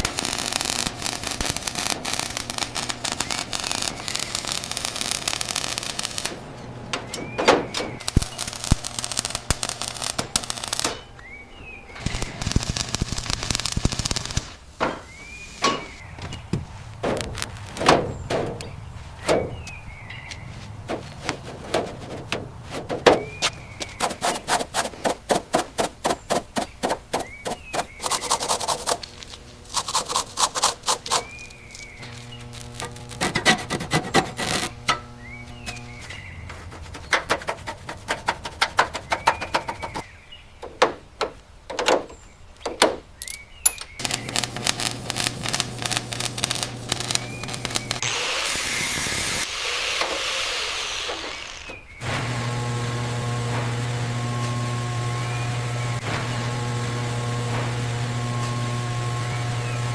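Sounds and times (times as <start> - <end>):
scraping rusted metal: 14.7 - 26.3, 27.0 - 40.0
sharp knocks on metal: 14.8 - 19.6
steady hum: 27.3 - 37.1, 44.0 - 49.5.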